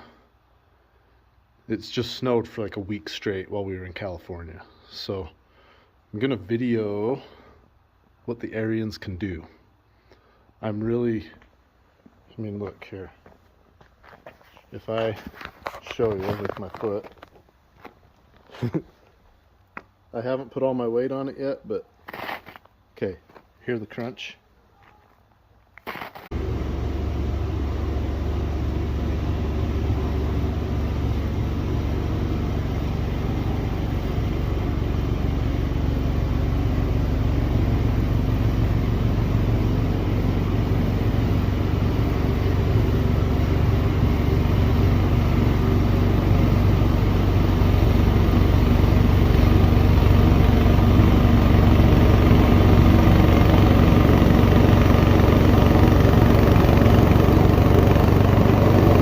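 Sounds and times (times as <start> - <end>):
snowblower engine running: 26.2 - 59.0.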